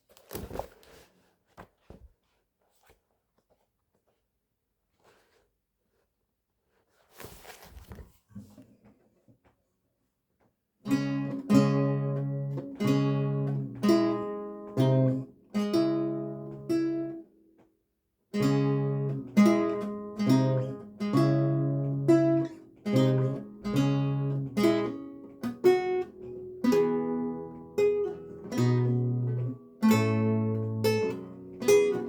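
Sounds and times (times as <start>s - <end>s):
solo lute playing: 10.9s - 17.2s, 18.3s - 32.0s.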